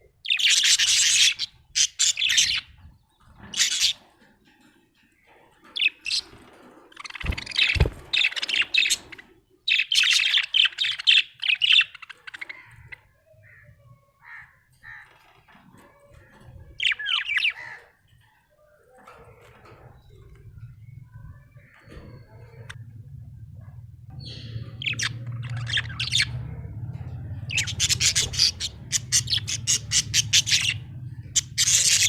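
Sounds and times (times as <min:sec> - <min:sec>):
budgerigar chirping and warbling: 0:24.2 - 0:26.7, 0:27.4 - 0:32.0.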